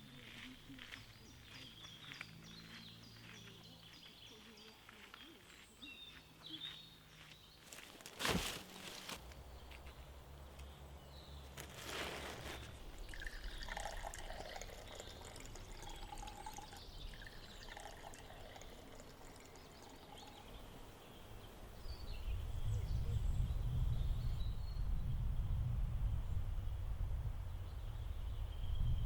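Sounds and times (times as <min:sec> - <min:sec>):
water pouring and trickling: 0:11.5 - 0:20.6
wind buffeting microphone: 0:21.8 - 0:29.0.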